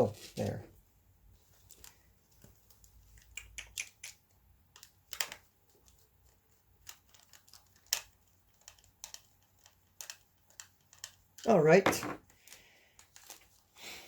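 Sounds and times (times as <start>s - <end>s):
plastic parts clicking and tapping: 4.6s - 13.5s.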